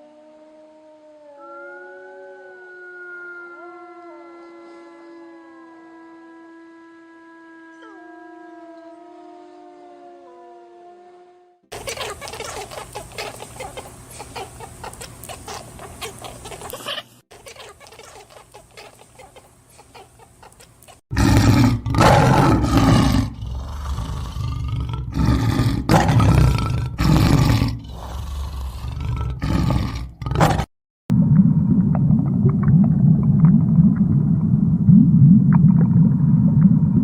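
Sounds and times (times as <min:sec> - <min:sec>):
animal deep roars: 0:21.1 - 0:30.7.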